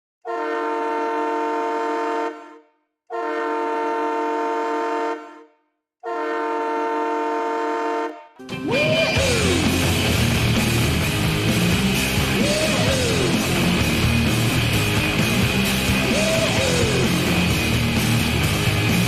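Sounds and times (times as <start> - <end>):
goal horn blasts: 0.2 - 8.5
goal song music: 8.4 - 19.0.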